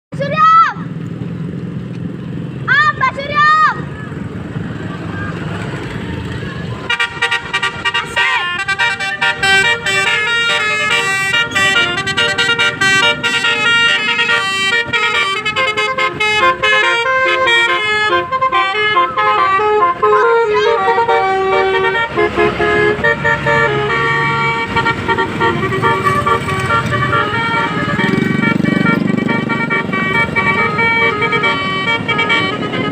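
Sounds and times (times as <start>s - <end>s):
multi-tone bus horn melody: 6.7s - 32.9s.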